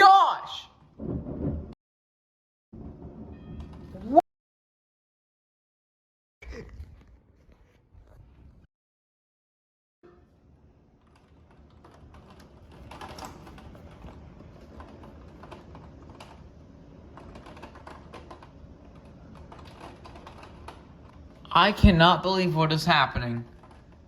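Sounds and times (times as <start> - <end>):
low thunder rumble: 1.0 - 1.8.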